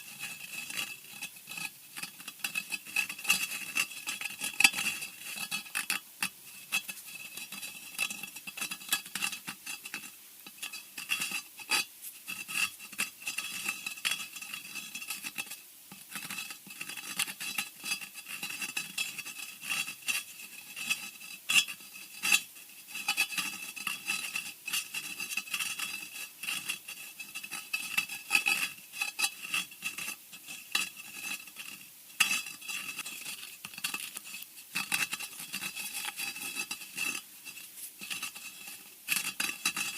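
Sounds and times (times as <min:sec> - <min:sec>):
scratches and sharp clicks: 0:22.1 - 0:39.9.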